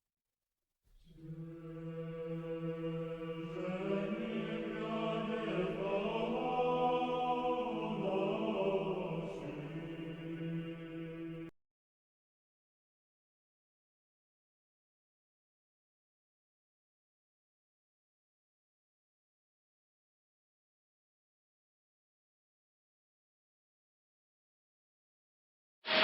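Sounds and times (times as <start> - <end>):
choir chanting: 1.0 - 11.5.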